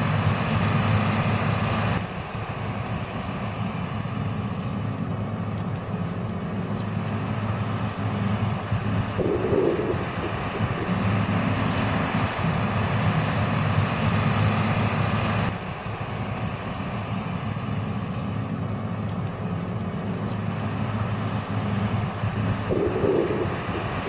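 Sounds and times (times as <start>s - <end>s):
farm machine engine droning: 0.0s - 24.0s
rushing noise: 6.6s - 15.6s, 19.7s - 24.0s.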